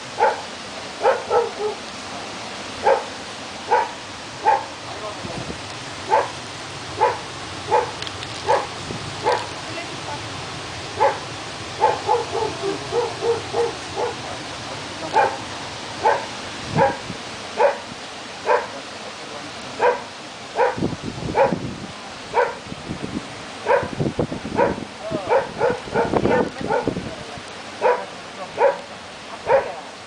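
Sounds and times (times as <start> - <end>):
dog barking: 0.2 - 1.8, 2.8 - 4.7, 6.1 - 6.4, 7.0 - 9.5, 11.0 - 11.2, 11.8 - 14.2, 15.1 - 15.4, 16.0 - 18.8, 19.8 - 20.8, 21.4 - 21.6, 22.3 - 22.6, 23.6 - 24.0, 24.6 - 27.0, 27.8 - 29.8
dog yipping: 0.2 - 1.8, 2.8 - 3.1, 3.7 - 4.7, 6.1 - 6.4, 7.0 - 9.5, 11.0 - 11.2, 11.8 - 14.2, 16.0 - 17.0, 17.6 - 17.8, 18.5 - 18.7, 19.8 - 20.0, 20.6 - 20.8, 21.4 - 21.6, 23.7 - 24.0, 24.6 - 26.9, 27.8 - 28.8, 29.5 - 29.8.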